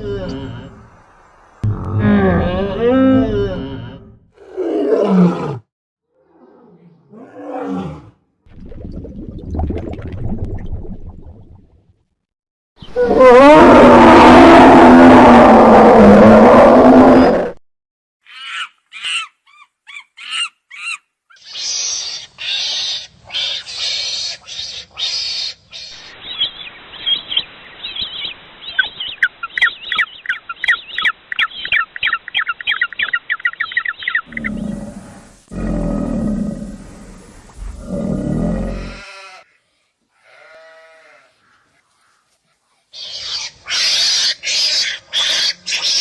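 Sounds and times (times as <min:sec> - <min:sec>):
long low animal calls: 0:01.6 - 0:05.6
high chirping animal calls: 0:18.3 - 0:34.8.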